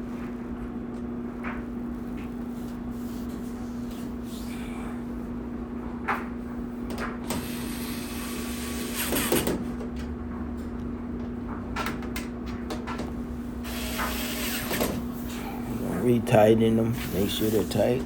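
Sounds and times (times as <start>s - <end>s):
steady hum: 1.2s - 8.9s, 13.1s - 18.0s.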